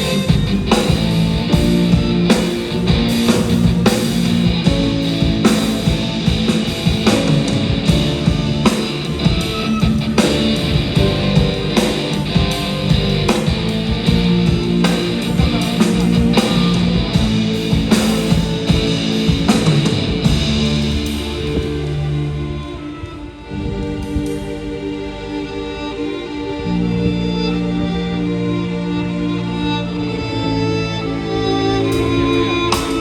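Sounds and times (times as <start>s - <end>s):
drum beat: 0.0s - 21.8s, 32.7s - 33.0s
live band playing: 0.0s - 22.8s, 31.9s - 33.0s
guitar: 0.0s - 33.0s.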